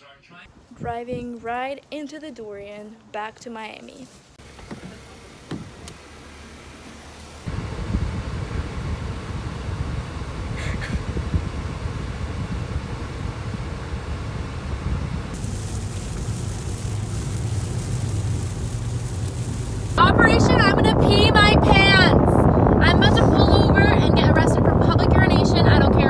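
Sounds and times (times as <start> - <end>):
car road and wind noise: 4.4 - 26.0
hiss: 10.3 - 11.6, 13.5 - 20.0.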